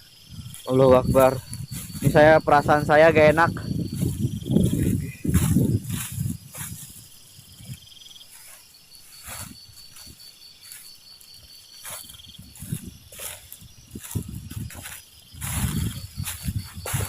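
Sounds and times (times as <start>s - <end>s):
crickets chirping trill: 0.0s - 17.0s
rustles: 3.9s - 17.0s.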